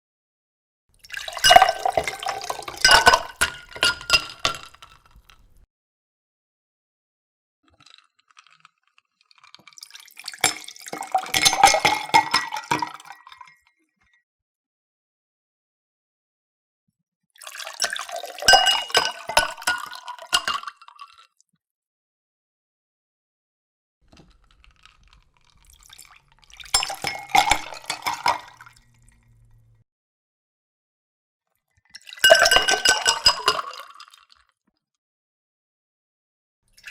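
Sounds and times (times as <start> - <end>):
water dripping: 1.0 - 5.6, 24.1 - 29.8
water pouring into a glass: 1.0 - 5.6, 7.8 - 13.5, 17.4 - 21.2, 24.1 - 29.8, 32.0 - 34.5.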